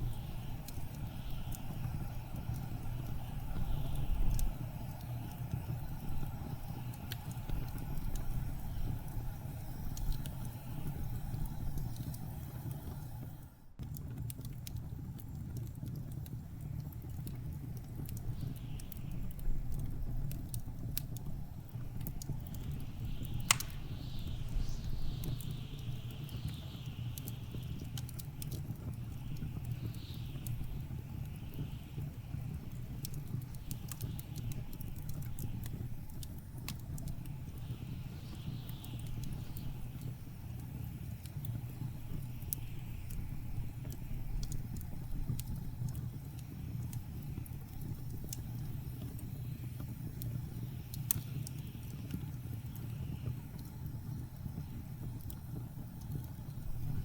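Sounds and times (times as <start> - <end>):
wood fire crackling: 0.0 - 57.0
high wind whistle: 22.2 - 27.6.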